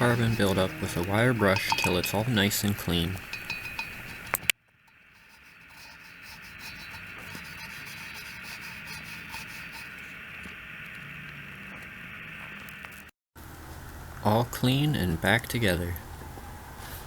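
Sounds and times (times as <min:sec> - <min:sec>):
wire brush scrubbing metal: 0:00.0 - 0:10.5.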